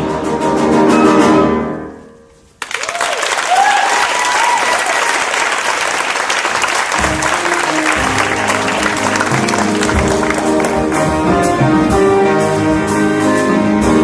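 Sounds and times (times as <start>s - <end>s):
audience whoops: 2.6s - 10.9s
audience applause: 2.6s - 11.3s
pit band playing: 5.2s - 14.0s
sung orchestral chord: 7.0s - 12.2s.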